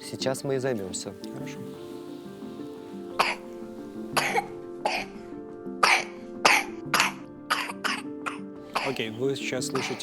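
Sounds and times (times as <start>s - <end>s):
background music: 0.0s - 10.0s
child coughing: 3.2s - 3.4s, 4.2s - 5.2s, 5.8s - 9.0s, 9.8s - 10.0s.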